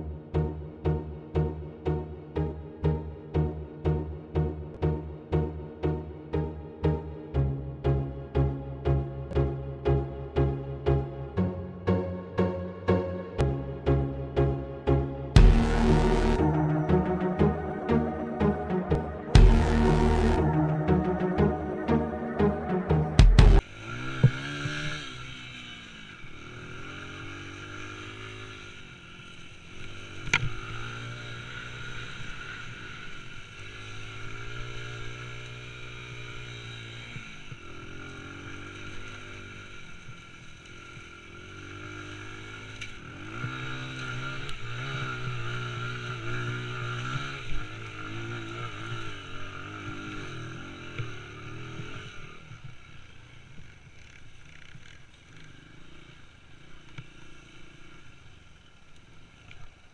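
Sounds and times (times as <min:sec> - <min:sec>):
small engine revving: 0:23.4 - 0:59.9.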